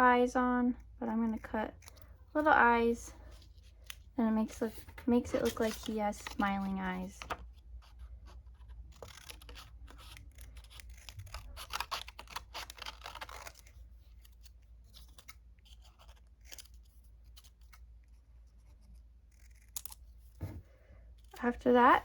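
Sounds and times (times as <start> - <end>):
paper rustling: 3.2 - 18.8
scissors snipping paper: 4.7 - 20.4.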